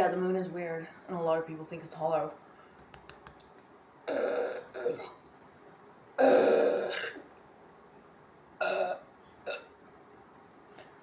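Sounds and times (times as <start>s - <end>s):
woman burping: 4.1s - 5.2s, 6.2s - 7.2s, 8.6s - 9.7s.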